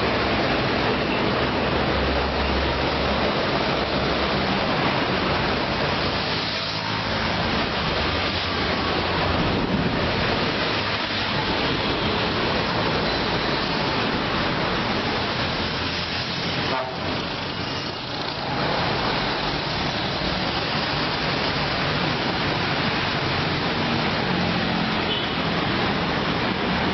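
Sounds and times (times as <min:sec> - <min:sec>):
passing road traffic: 0:00.0 - 0:26.9.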